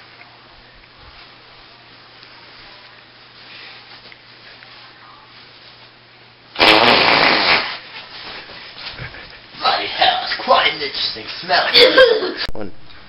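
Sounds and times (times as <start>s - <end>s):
loud fart: 6.5s - 7.8s
steady low hum: 7.6s - 13.0s.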